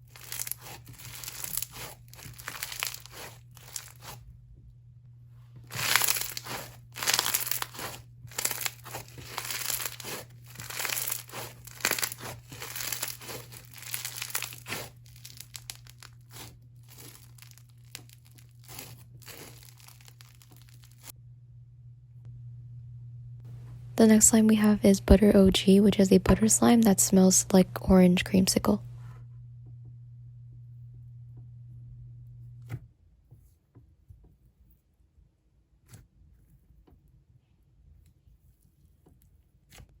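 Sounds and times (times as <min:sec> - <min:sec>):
crunchy slime squished by hand: 0:00.0 - 0:04.2, 0:05.7 - 0:21.1.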